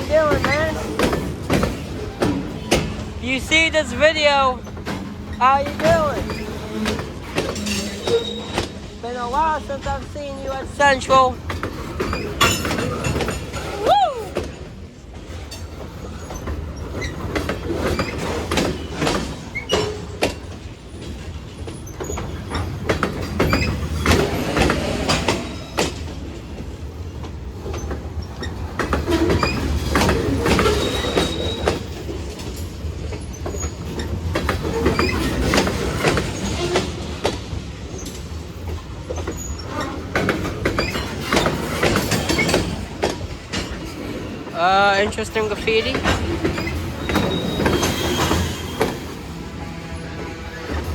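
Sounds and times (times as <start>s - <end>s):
freight train rumbling: 0.0s - 50.9s
wheels clacking over rail joints: 0.0s - 50.9s
high wheel squeal: 2.6s - 11.3s, 27.8s - 32.5s, 33.1s - 38.3s, 39.1s - 43.0s, 45.4s - 50.9s.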